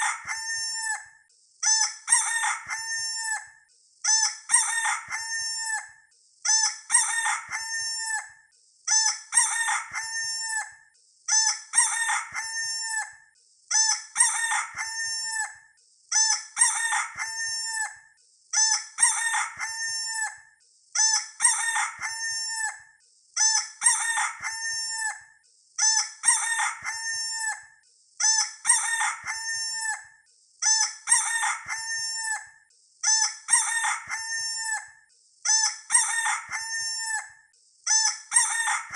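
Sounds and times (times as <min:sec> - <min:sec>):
rooster crowing: 0:00.0 - 0:01.1, 0:02.2 - 0:03.4, 0:04.6 - 0:05.9, 0:07.0 - 0:08.3, 0:09.4 - 0:10.7, 0:11.7 - 0:13.1, 0:14.2 - 0:15.6, 0:16.6 - 0:18.0, 0:19.0 - 0:20.4, 0:21.4 - 0:22.8, 0:23.8 - 0:25.2, 0:26.2 - 0:27.6, 0:28.6 - 0:30.0, 0:31.1 - 0:32.4, 0:33.5 - 0:34.9, 0:35.9 - 0:37.3, 0:38.3 - 0:38.9.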